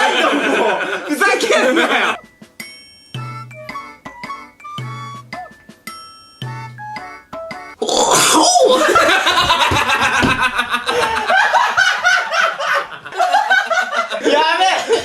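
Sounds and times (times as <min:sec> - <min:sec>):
people laughing heartily: 0:00.0 - 0:02.2, 0:08.6 - 0:15.0.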